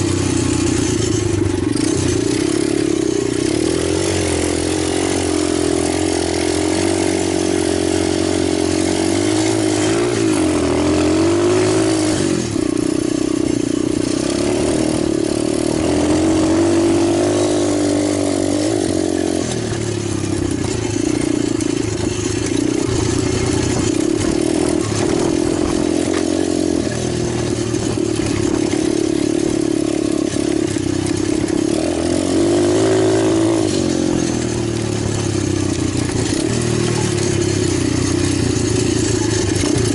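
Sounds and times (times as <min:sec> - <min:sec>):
pit bike engine revving: 0:00.0 - 0:39.9.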